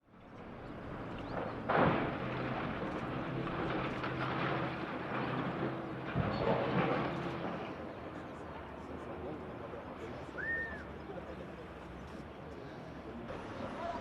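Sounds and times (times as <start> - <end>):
rubble crashing: 1.0 - 7.6.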